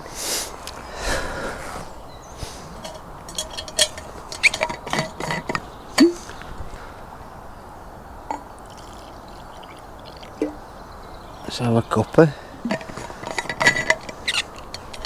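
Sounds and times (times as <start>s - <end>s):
mug and flask clinking: 2.8s - 6.2s, 8.3s - 10.6s.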